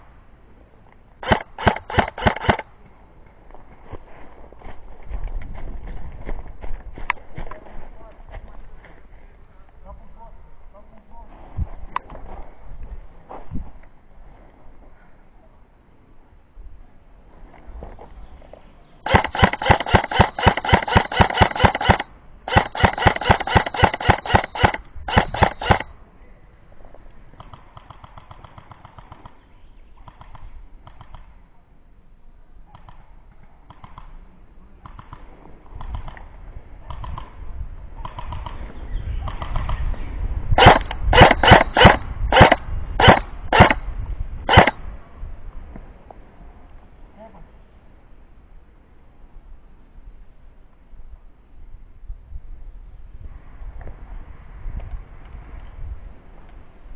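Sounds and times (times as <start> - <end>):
airsoft gun firing bursts: 1.2 - 2.7, 19.0 - 25.9, 40.6 - 43.8, 44.5 - 44.8.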